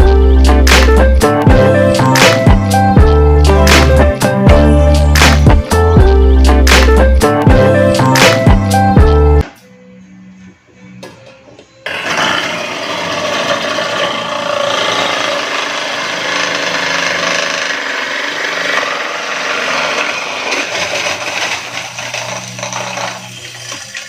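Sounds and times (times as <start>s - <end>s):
ice crusher grinding ice: 11.9s - 24.0s.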